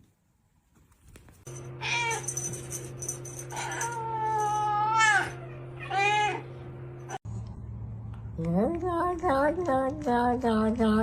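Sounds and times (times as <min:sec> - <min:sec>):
low hum: 0:01.5 - 0:11.0
cat meowing: 0:03.7 - 0:06.5.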